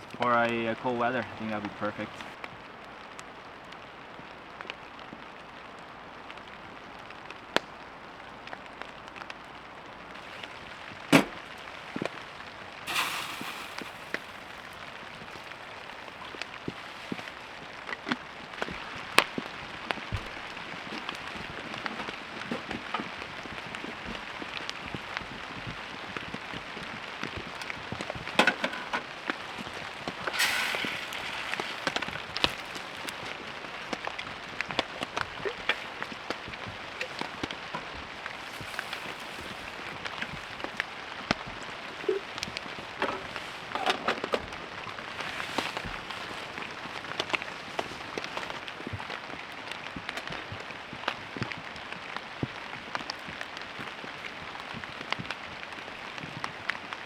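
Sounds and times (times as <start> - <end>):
rain pattering on tent: 0.0 - 57.0
louder knocks: 11.1 - 11.4
short hissing bursts: 12.9 - 14.6, 30.3 - 32.0.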